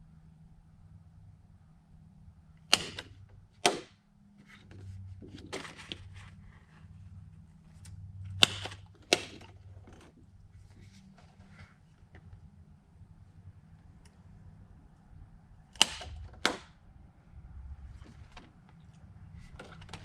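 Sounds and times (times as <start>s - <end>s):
paper punch snapping through plastic: 2.7s - 6.3s, 8.3s - 10.2s, 15.7s - 16.8s, 19.4s - 20.0s.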